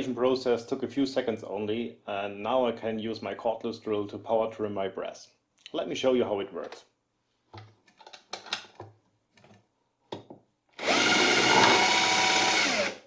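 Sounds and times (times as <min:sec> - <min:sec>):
cordless drill running: 0:10.8 - 0:13.0.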